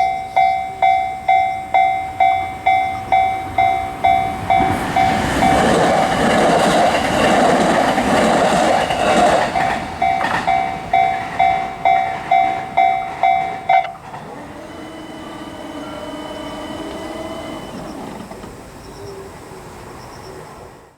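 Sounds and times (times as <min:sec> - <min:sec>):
level-crossing bell ringing: 0:00.0 - 0:05.9, 0:09.5 - 0:18.3
train passing: 0:00.0 - 0:20.9.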